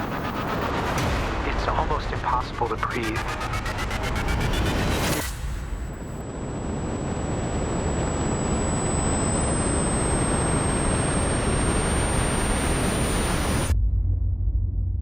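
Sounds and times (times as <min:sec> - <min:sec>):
wind and aircraft roar: 0:00.0 - 0:13.7.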